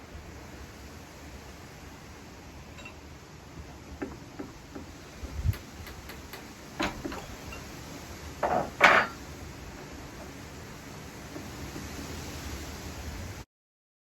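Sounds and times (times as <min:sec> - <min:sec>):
metallic clank: 0:08.4 - 0:09.2.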